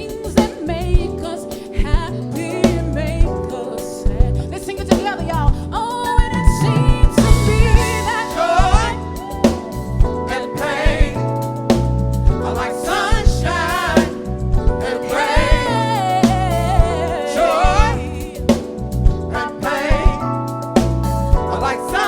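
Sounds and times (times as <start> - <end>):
drum kit beat: 0.0 - 22.0
person singing with vibrato: 5.7 - 11.4, 12.4 - 20.3, 21.4 - 22.0.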